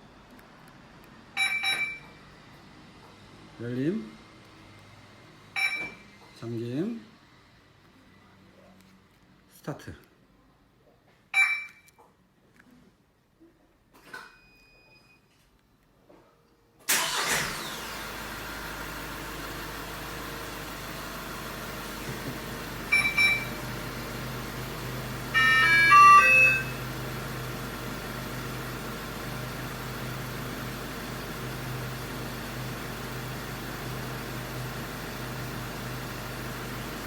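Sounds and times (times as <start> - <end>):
truck engine cranking: 16.9 - 18.4
truck engine idling: 16.9 - 37.0
electronic beeps: 25.4 - 26.8.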